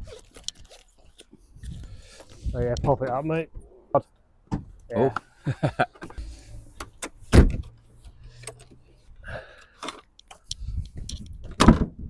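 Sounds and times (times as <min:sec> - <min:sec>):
car door clunks and knocks: 0:04.5 - 0:04.8, 0:07.3 - 0:07.7, 0:11.4 - 0:12.0.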